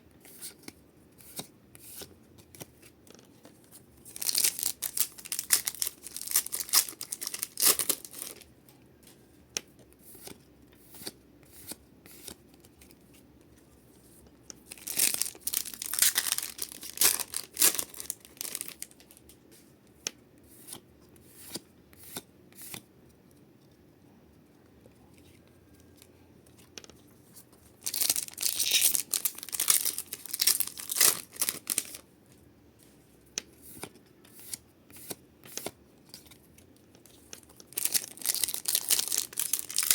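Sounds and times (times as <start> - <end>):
wrappers tearing and crinkling: 4.1 - 8.4, 14.7 - 19.0, 27.8 - 32.0, 37.4 - 39.9.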